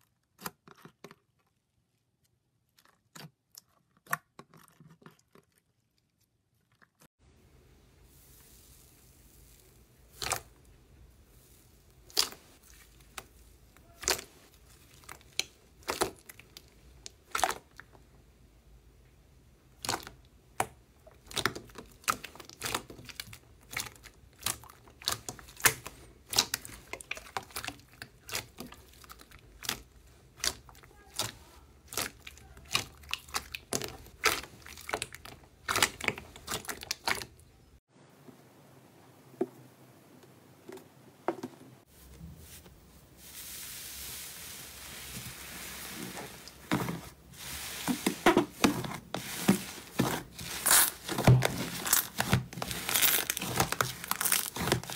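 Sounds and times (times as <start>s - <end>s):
slime popping and crackling: 12.0s - 13.3s, 50.0s - 54.9s.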